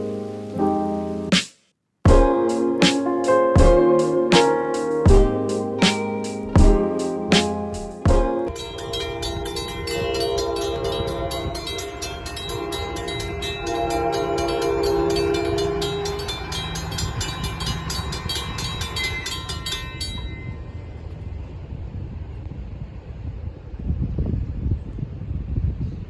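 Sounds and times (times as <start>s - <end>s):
train rumbling: 4.8s - 25.5s
train horn blasts: 8.6s - 17.6s.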